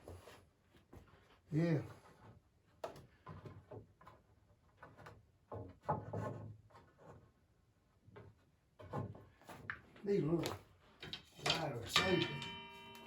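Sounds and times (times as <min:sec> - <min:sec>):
wooden slats knocking and scraping: 0:10.4 - 0:13.0.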